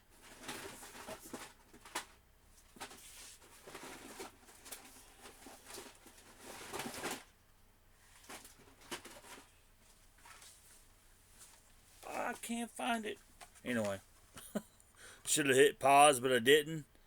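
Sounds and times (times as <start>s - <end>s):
rummaging rustling and clicking: 0.0s - 7.4s, 8.0s - 14.0s.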